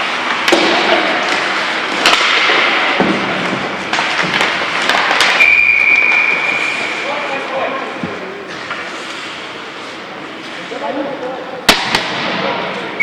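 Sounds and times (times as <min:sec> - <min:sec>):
hockey sticks and puck clacking: 0:00.0 - 0:10.7, 0:11.7 - 0:12.8
referee whistle blast: 0:05.4 - 0:06.9.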